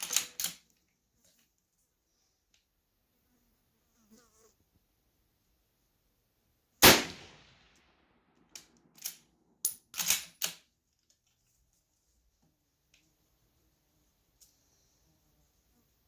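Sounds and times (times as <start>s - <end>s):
rifle bolt metallic clicks: 0.0s - 0.6s, 8.5s - 10.6s
rifle shot with echo: 6.8s - 7.8s.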